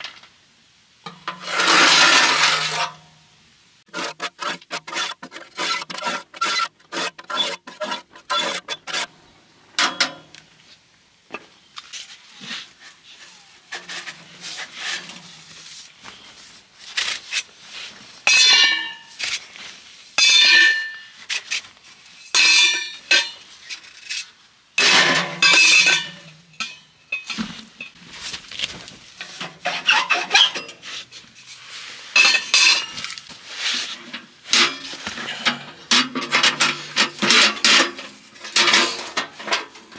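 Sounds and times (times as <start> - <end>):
utensil scraping a pot: 1.1 - 3.0, 3.9 - 9.1, 29.2 - 31.6
metal cookware clinking: 9.8 - 10.3, 24.8 - 27.4.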